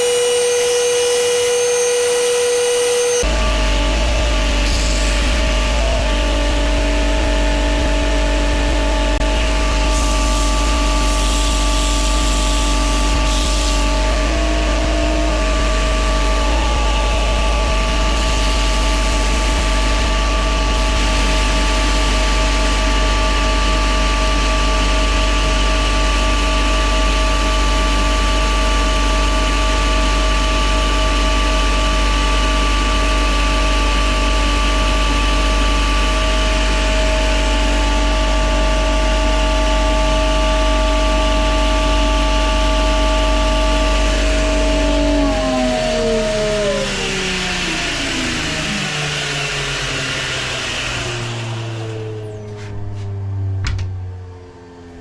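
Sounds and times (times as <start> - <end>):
belt grinder grinding wood: 0.0 - 3.2
low motor hum: 0.0 - 31.8, 33.6 - 55.0.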